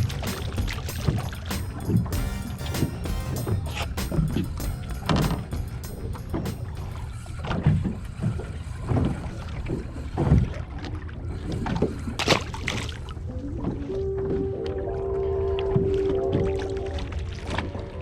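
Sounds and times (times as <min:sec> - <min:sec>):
background music held note: 0:00.0 - 0:07.8.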